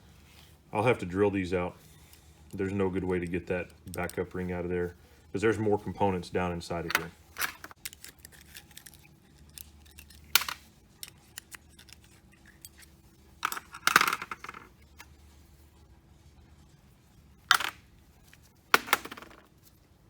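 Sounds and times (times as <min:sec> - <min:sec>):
small metal parts clinking: 0:06.8 - 0:15.0.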